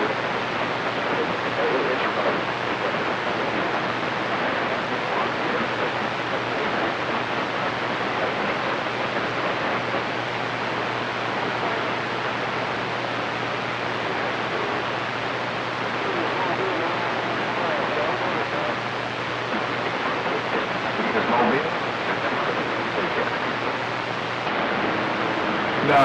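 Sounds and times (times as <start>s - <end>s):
faint low hum: 0.0s - 7.4s
radio static hiss: 0.0s - 26.0s.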